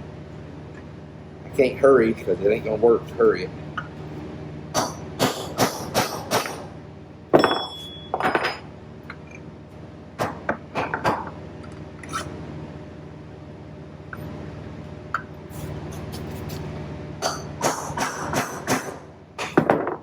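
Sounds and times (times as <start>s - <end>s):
hammer striking steel punch: 4.8s - 6.7s, 7.4s - 8.3s, 17.2s - 19.9s.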